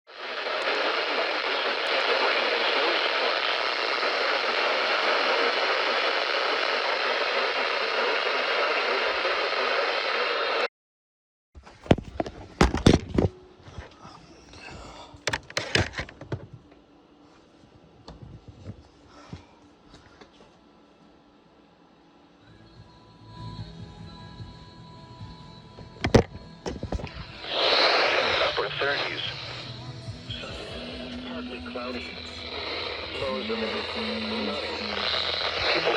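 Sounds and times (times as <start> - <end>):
radio static hiss: 0.1 - 10.7, 15.2 - 16.4, 26.0 - 35.9.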